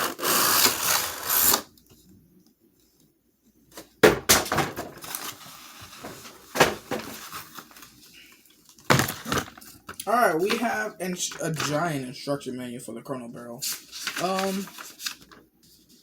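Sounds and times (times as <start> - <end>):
cardboard and plastic clattering: 3.8 - 8.0, 8.7 - 11.9
packaging rustling: 4.4 - 12.0, 13.6 - 16.0.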